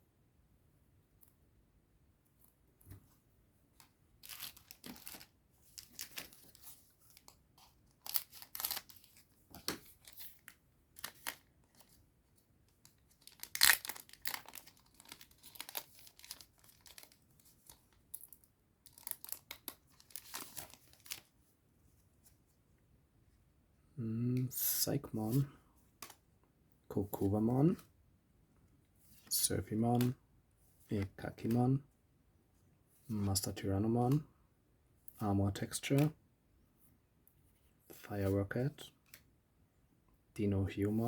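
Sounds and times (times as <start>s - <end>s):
foil wrapper ripping and crinkling: 13.2s - 17.1s.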